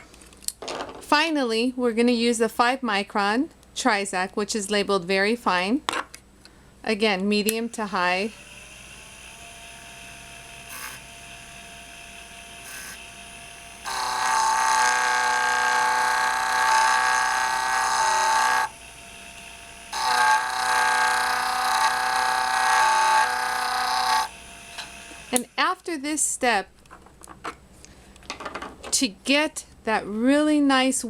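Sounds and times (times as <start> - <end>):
polishing machine motor hum: 7.7 - 25.4
glass sanding on spinning disc: 12.6 - 13.0.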